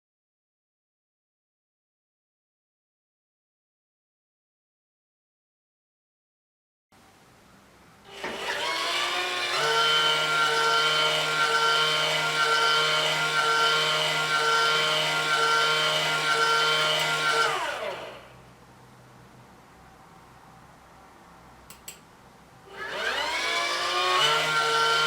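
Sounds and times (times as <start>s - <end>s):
coffee roaster motor whine: 8.1s - 18.4s, 22.7s - 25.0s.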